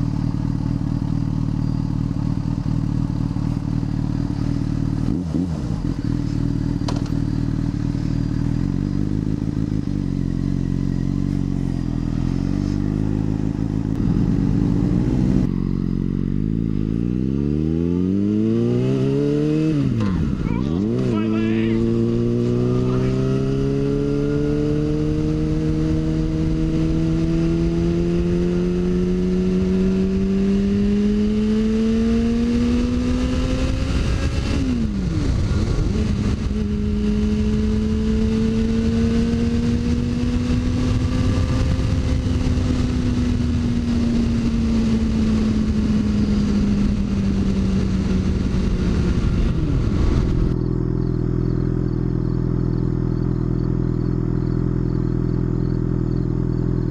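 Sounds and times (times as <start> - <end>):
motorcycle engine revving: 0.0 - 56.9.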